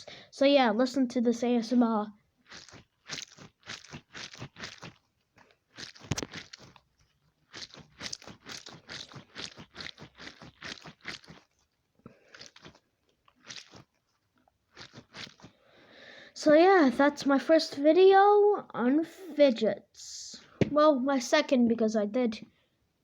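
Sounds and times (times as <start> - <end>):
squishy stress ball squeezed: 2.4 - 15.6.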